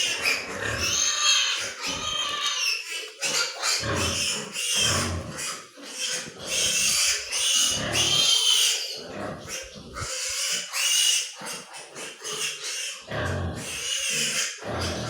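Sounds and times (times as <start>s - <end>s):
pigs squealing: 0.0s - 15.0s.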